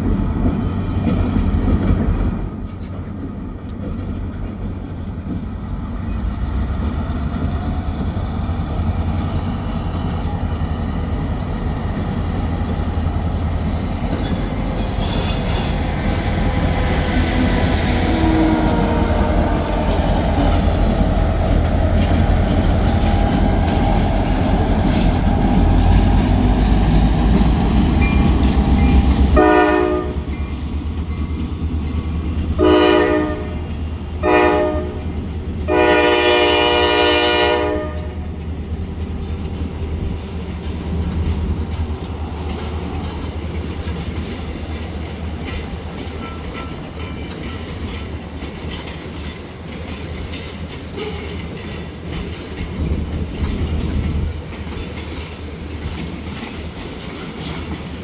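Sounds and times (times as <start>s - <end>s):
freight cars clickety-clack: 0.0s - 58.0s
locomotive rumble: 0.0s - 58.0s
train air horn blasts: 18.0s - 20.6s, 29.3s - 30.3s, 32.6s - 35.1s, 35.7s - 38.2s.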